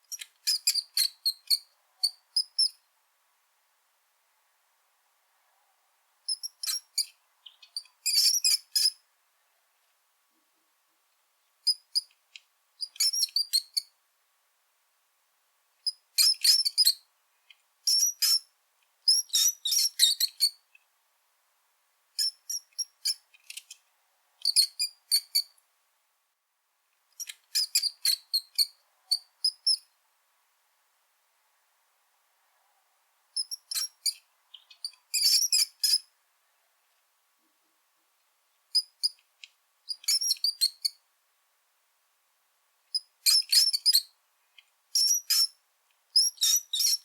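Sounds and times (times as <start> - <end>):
rat squeaking: 6.3 - 9.0, 12.9 - 13.8, 17.9 - 18.5, 19.1 - 20.6, 27.2 - 29.8, 33.4 - 36.1, 39.9 - 41.0, 43.0 - 44.0, 45.0 - 45.6, 46.2 - 47.0.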